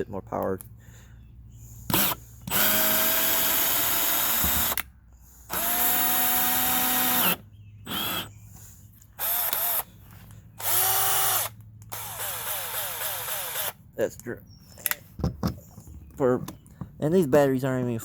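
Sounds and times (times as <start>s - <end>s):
cordless drill motor whine: 1.9s - 4.9s, 5.5s - 8.4s, 9.2s - 9.9s, 10.6s - 13.8s.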